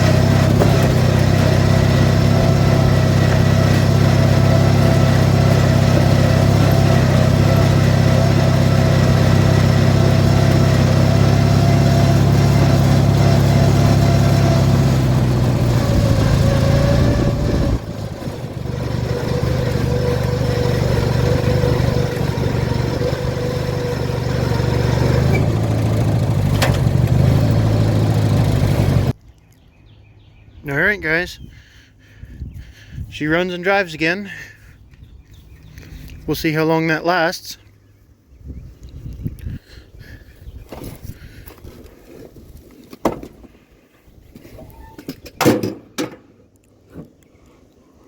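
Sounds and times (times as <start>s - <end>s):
riding mower engine running: 0.0s - 29.2s.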